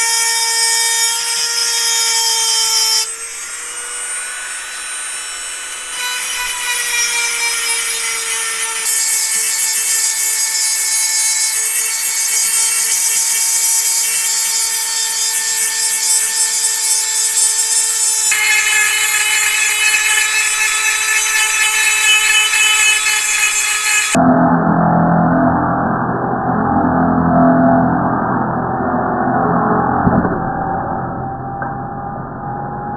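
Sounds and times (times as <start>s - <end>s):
power tool high whine: 0.0s - 24.2s
steel grinding hiss: 3.3s - 24.2s.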